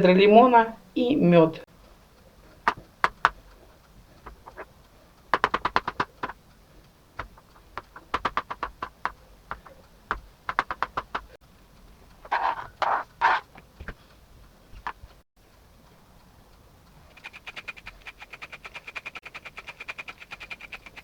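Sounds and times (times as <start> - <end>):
rapid clicking taps: 2.1 - 11.4, 17.1 - 21.0
utensil tapping: 2.6 - 4.7, 5.3 - 6.4, 7.2 - 11.4
utensil scuffing: 12.2 - 14.1.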